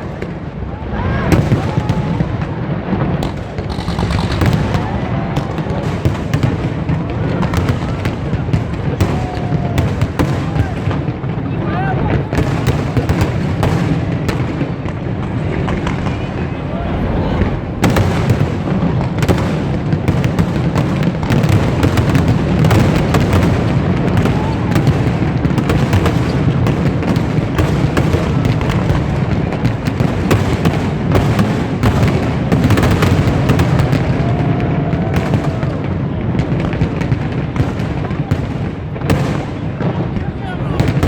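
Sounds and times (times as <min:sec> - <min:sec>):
fireworks bangs and crackling: 0:00.0 - 0:41.0
low rumble: 0:14.9 - 0:18.8.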